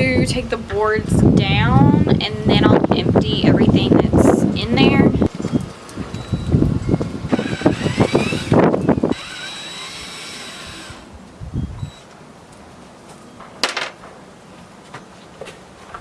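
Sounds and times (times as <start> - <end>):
power drill motor whining: 6.2 - 11.1.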